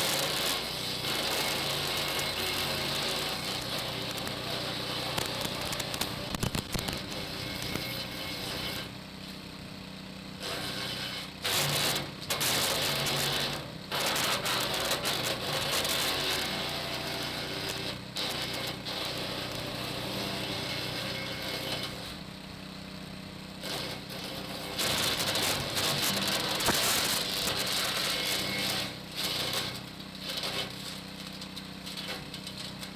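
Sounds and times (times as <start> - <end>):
shredder motor humming: 0.0 - 8.9, 10.4 - 22.3, 23.6 - 32.9
branches crackling and grinding: 2.0 - 8.4, 24.8 - 32.9.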